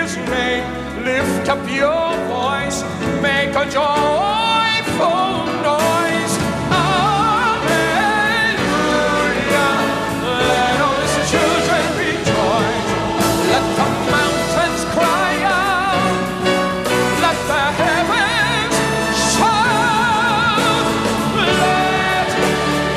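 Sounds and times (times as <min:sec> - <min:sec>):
instrumental accompaniment: 0:00.0 - 0:22.9
choir singing: 0:05.2 - 0:22.9.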